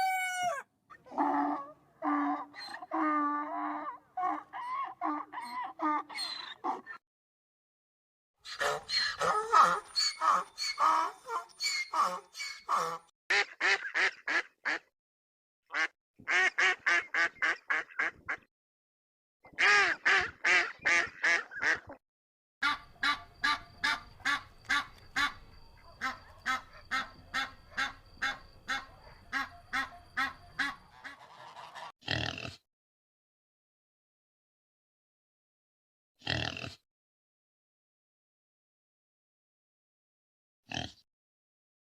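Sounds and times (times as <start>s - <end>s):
farm fowl calling: 0.0s - 0.6s, 8.5s - 14.8s, 22.6s - 31.9s.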